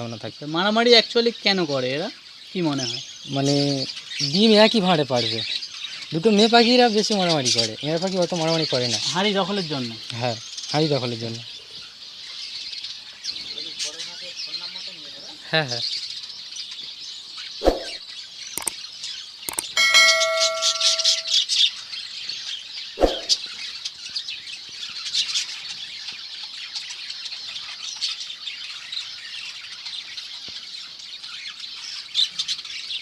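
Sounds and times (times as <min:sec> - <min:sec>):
birds chattering and chirping: 0:00.0 - 0:33.0
brief ringing tone: 0:19.5 - 0:21.4.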